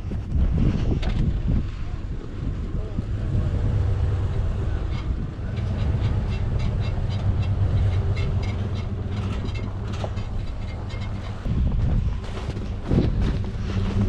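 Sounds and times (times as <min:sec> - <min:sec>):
vehicle engine running under load: 0:01.0 - 0:14.0
rapid irregular clicking and squeaking: 0:04.1 - 0:14.0.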